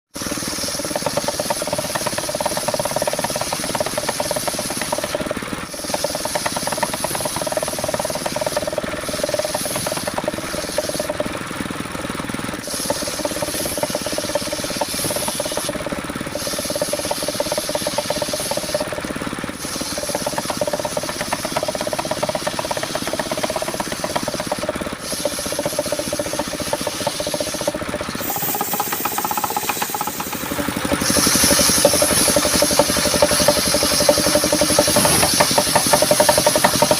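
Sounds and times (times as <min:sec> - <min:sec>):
sawmill running tone: 0:00.1 - 0:36.9
saw rasping through log: 0:00.2 - 0:11.4, 0:12.6 - 0:36.9.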